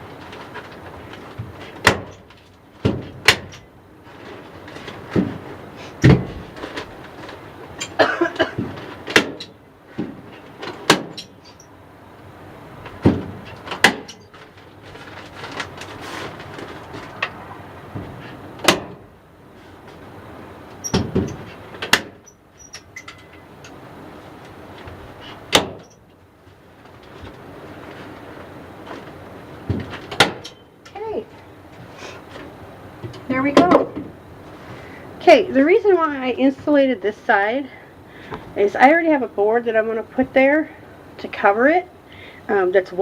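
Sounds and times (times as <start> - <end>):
insulation paper rustling: 14.3 - 18.4.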